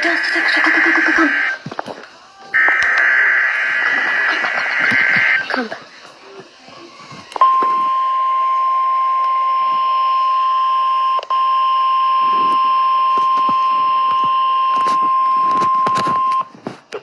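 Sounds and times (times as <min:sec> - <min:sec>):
steady high alarm tone: 0:02.6 - 0:05.5.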